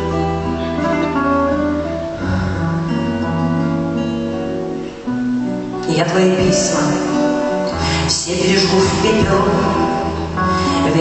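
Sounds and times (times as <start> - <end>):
steady bass line: 0.0 - 7.6
guitar: 0.0 - 11.0
held notes: 0.0 - 11.0.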